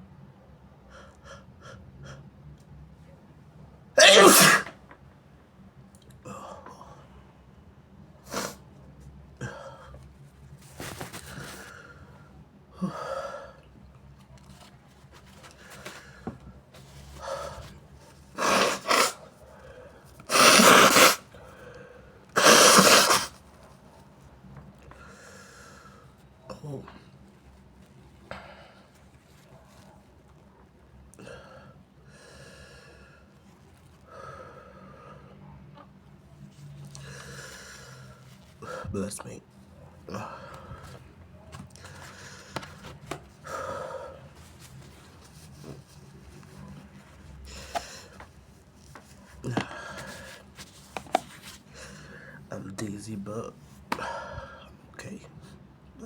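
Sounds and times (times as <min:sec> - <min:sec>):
congested nose breathing: 0:17.2 - 0:23.4
man breathing through congested nose: 0:36.9 - 0:38.9, 0:51.1 - 0:52.4.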